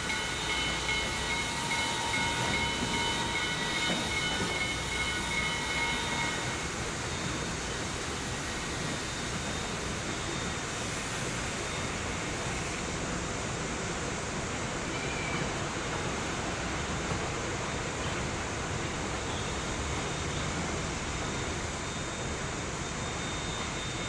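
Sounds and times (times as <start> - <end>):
high ringing tones: 0.0 - 10.6, 19.2 - 24.0
train running: 0.0 - 24.0.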